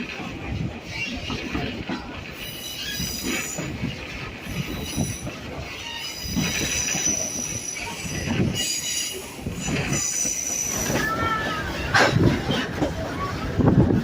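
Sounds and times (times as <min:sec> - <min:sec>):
train rumble and clatter: 0:00.0 - 0:14.0
train wheels squealing: 0:02.3 - 0:12.6.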